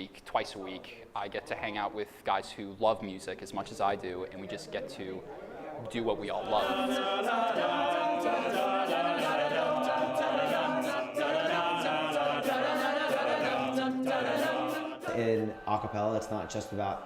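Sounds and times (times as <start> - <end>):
men singing in close harmony: 6.2 - 17.0
steady percussive beat: 6.7 - 15.2.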